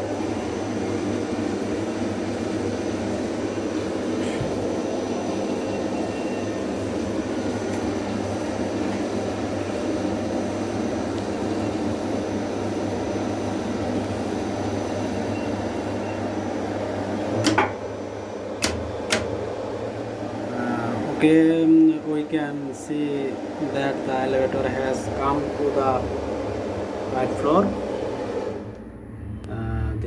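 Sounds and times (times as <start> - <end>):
elevator machine humming and whining: 0.0 - 30.0
sharp clack: 17.4 - 17.8.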